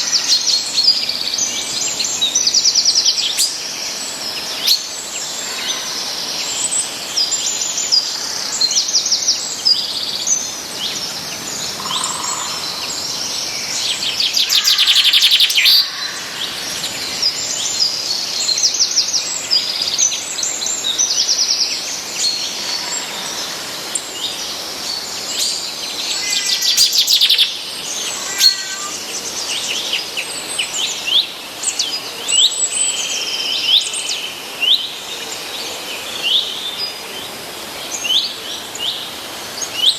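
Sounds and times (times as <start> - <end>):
songbirds chirping: 0.0 - 39.9
buzzy bird trill: 27.2 - 29.1.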